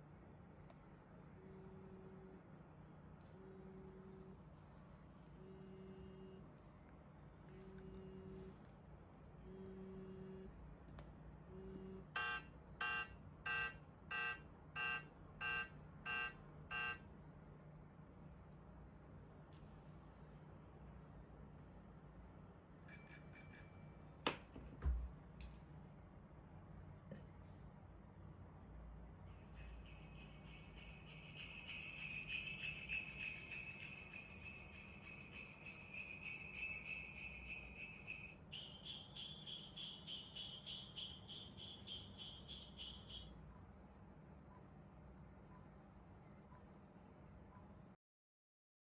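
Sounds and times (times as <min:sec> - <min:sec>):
sleigh bells jingling: 0:29.3 - 0:42.4.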